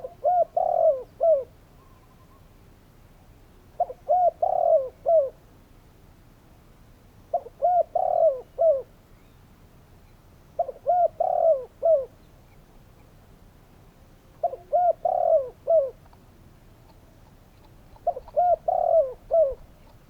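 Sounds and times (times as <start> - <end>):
dove cooing: 0.0 - 1.6, 3.7 - 5.4, 7.3 - 8.9, 10.6 - 12.2, 14.4 - 16.1, 17.6 - 20.0.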